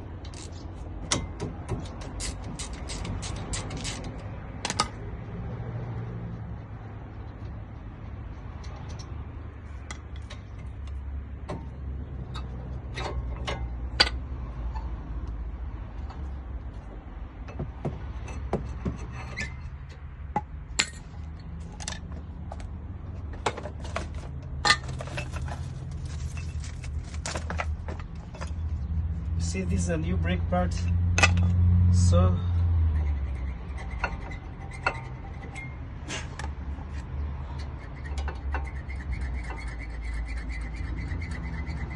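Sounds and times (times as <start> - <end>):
metal tools clinking: 23.8 - 28.6.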